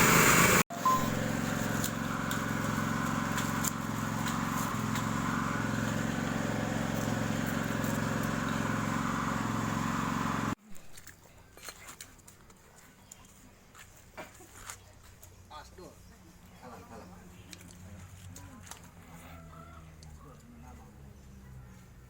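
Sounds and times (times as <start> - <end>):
small engine running: 0.0 - 10.6.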